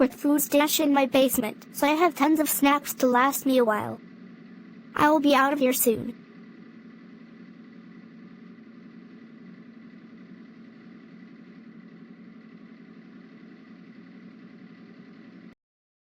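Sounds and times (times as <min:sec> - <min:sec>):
low mechanical hum: 0:00.0 - 0:15.6
faint high tone: 0:05.0 - 0:06.1.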